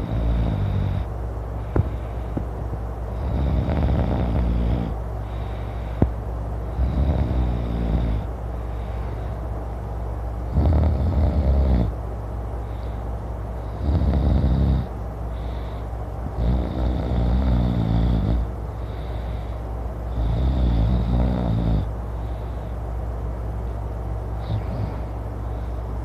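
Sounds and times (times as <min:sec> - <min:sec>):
man snoring loudly: 0:00.0 - 0:01.1, 0:03.2 - 0:05.0, 0:06.7 - 0:08.3, 0:10.5 - 0:11.9, 0:13.7 - 0:14.9, 0:16.4 - 0:18.5, 0:20.1 - 0:21.9.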